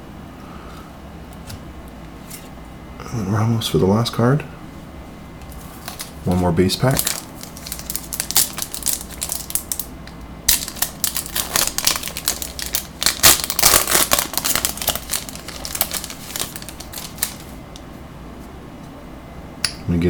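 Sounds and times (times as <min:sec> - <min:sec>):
plastic wrapper tearing and crinkling: 0:05.8 - 0:17.8.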